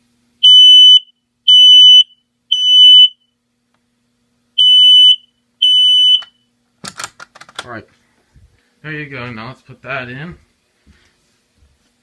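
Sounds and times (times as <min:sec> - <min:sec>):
smoke alarm beeping: 0:00.4 - 0:03.4, 0:04.6 - 0:06.5.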